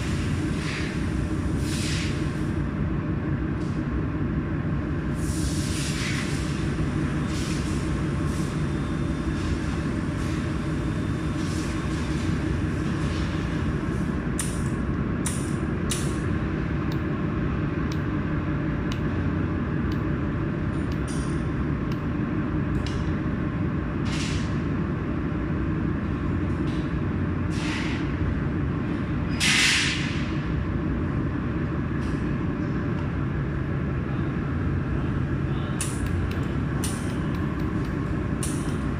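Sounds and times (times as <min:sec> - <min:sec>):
hiss: 0:01.6 - 0:02.4, 0:05.2 - 0:06.7, 0:07.3 - 0:08.6, 0:27.5 - 0:28.0, 0:29.4 - 0:30.2.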